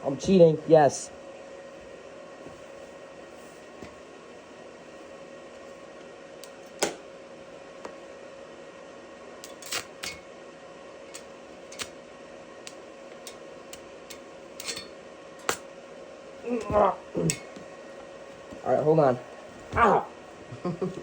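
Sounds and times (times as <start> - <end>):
welding arc popping: 9.4 - 10.3, 11.0 - 12.0, 12.6 - 15.7
welder humming: 9.4 - 21.0.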